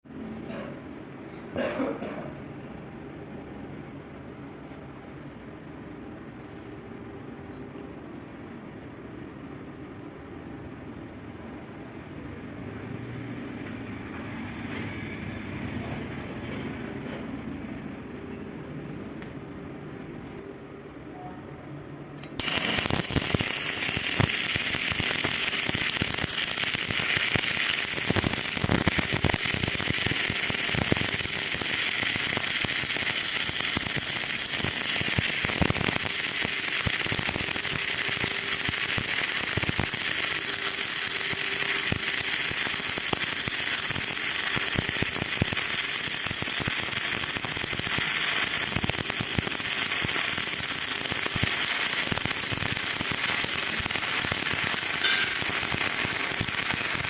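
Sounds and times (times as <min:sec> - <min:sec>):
welding arc crackling: 0:22.2 - 0:57.0.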